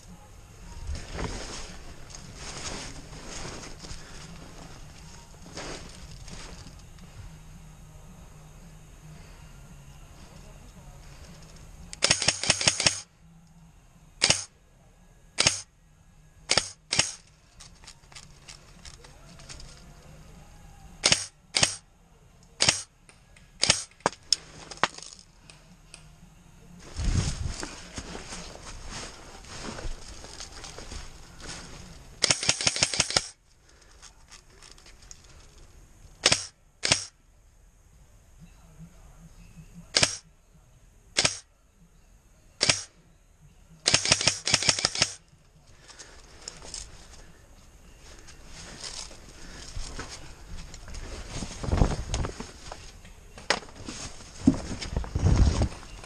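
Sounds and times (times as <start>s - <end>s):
airsoft guns firing: 12.0s - 13.1s, 14.2s - 14.5s, 15.4s - 15.7s, 16.5s - 17.2s, 21.0s - 21.8s, 22.6s - 22.9s, 23.6s - 24.2s, 36.2s - 37.1s, 39.9s - 40.2s, 41.2s - 41.4s, 42.6s - 42.9s, 43.9s - 45.2s.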